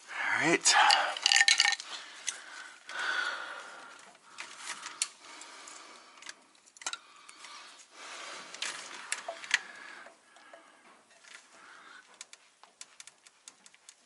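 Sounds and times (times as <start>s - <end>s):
clicks and knocks on fittings: 6.2s - 7.5s, 8.6s - 14.0s.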